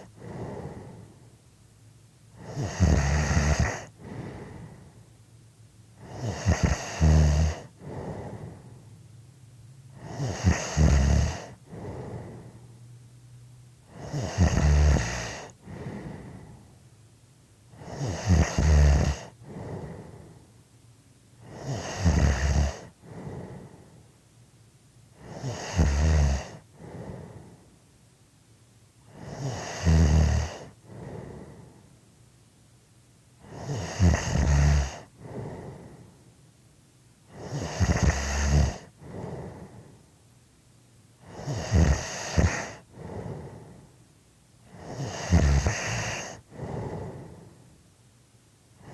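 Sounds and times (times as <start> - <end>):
soft breath: 0.0 - 1.4, 3.8 - 5.2, 7.6 - 9.0, 11.3 - 12.8, 15.3 - 16.8, 19.2 - 20.6, 22.7 - 24.2, 26.5 - 27.9, 30.5 - 32.0, 34.9 - 36.3, 38.7 - 40.2, 42.2 - 44.0, 44.6 - 47.8
person snoring: 2.4 - 4.8, 6.0 - 8.7, 10.0 - 12.6, 13.9 - 16.6, 17.8 - 20.3, 21.4 - 23.8, 25.2 - 27.6, 29.1 - 31.7, 33.4 - 36.1, 37.3 - 39.9, 41.2 - 43.8, 44.7 - 47.5.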